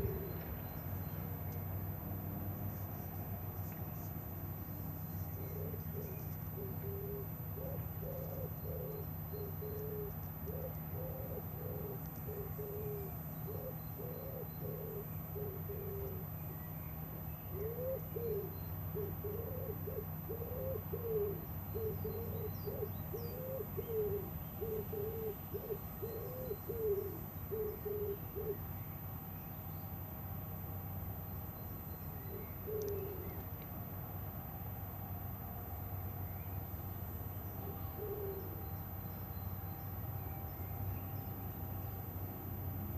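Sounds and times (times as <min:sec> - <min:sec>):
bird hooting: 0:00.0 - 0:00.9, 0:05.0 - 0:29.0, 0:31.9 - 0:33.6, 0:37.6 - 0:39.7
small birds chirping: 0:00.0 - 0:01.8, 0:02.5 - 0:29.9.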